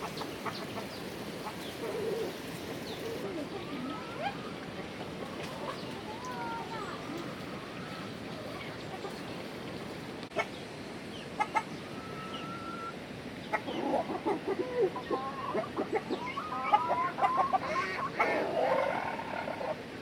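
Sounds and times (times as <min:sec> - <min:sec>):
chickens clucking: 0:00.0 - 0:09.3, 0:10.3 - 0:10.6, 0:11.3 - 0:19.8.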